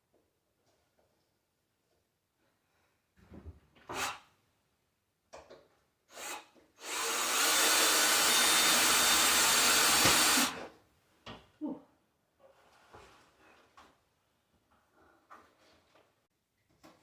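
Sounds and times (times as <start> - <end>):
power drill driving screw: 6.1 - 10.7.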